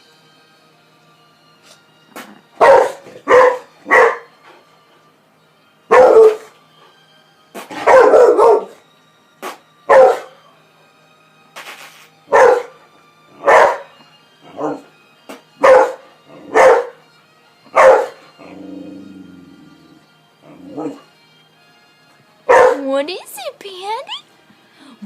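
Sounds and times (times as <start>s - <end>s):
dog barking: 2.6s - 4.3s, 5.9s - 6.5s, 7.8s - 8.8s, 9.9s - 10.4s, 12.3s - 12.8s, 13.4s - 13.9s, 15.6s - 17.0s, 17.7s - 18.2s, 22.5s - 22.8s.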